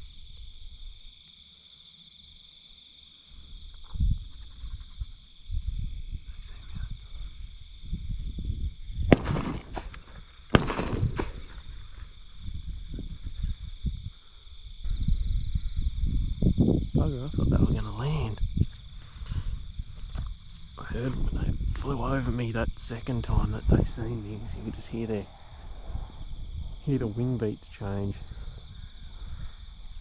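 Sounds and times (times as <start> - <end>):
shotgun shots echoing: 9.1 - 12.0.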